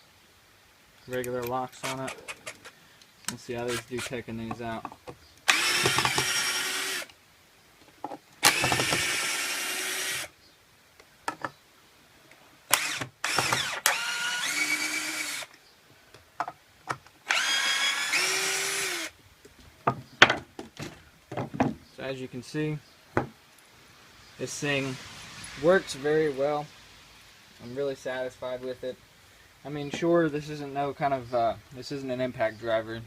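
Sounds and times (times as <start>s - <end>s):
cordless drill motor whining: 5.5s - 7.1s, 8.4s - 10.3s, 12.7s - 15.5s, 17.2s - 19.1s.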